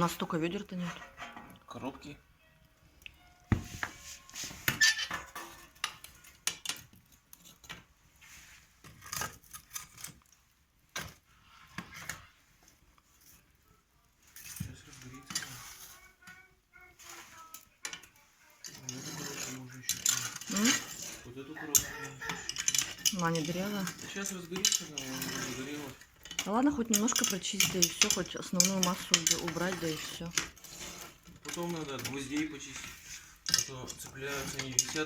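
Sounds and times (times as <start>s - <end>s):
metal tools scraping ash: 0.0s - 1.9s, 4.2s - 7.9s, 8.8s - 10.3s, 14.3s - 16.2s, 17.0s - 35.0s.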